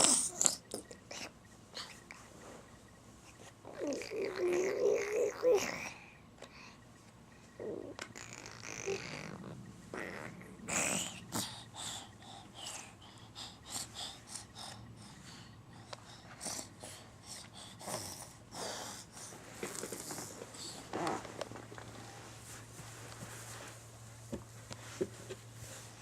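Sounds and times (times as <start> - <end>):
low hum: 0.2 - 18.3.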